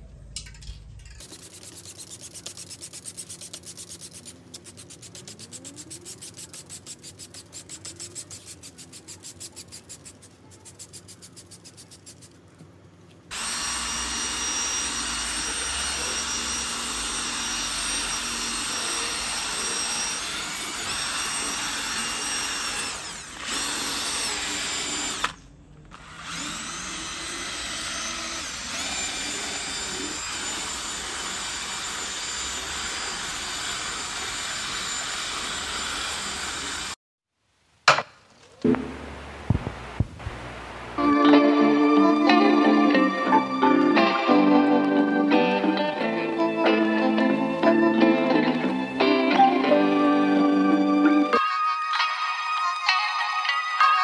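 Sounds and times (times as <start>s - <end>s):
rhythmic scrubbing strokes: 1.2s - 12.3s
power tool running: 13.3s - 37.0s.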